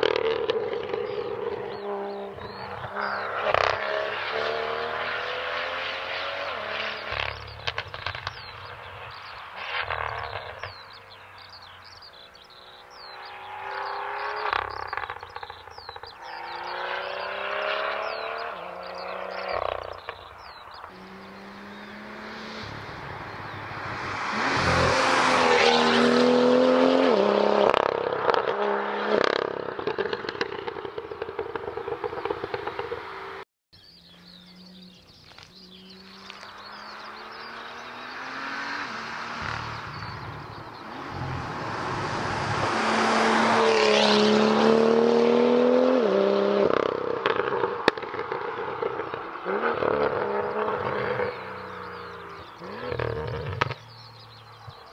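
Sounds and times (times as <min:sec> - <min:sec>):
car engine accelerating: 0:00.0 - 0:33.4, 0:34.0 - 0:54.9
exhaust crackles and pops: 0:07.0 - 0:10.8, 0:14.4 - 0:16.2, 0:29.2 - 0:33.1, 0:46.7 - 0:54.9.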